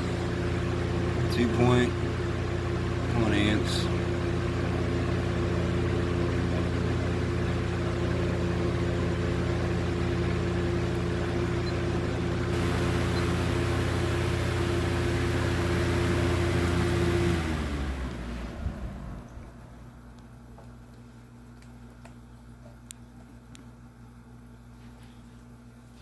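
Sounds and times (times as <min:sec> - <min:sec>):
fan motor hum: 0:00.0 - 0:26.0.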